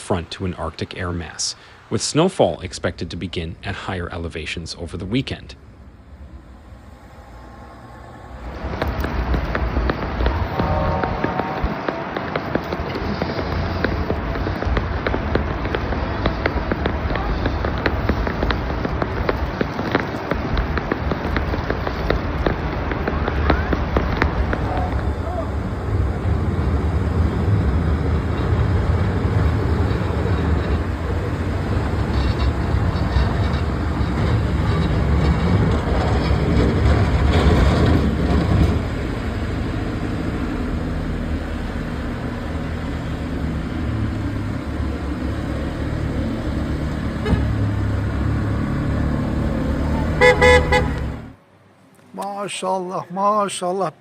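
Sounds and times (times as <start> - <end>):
rumble of vehicles: 0.0 - 54.0
car horn honk: 10.3 - 12.1, 47.2 - 47.6, 50.1 - 51.2.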